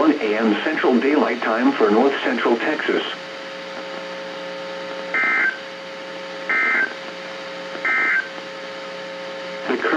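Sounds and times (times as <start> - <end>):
radio hum: 0.0 - 9.9
digital data tone bursts: 5.1 - 5.6, 6.5 - 7.0, 7.8 - 8.3.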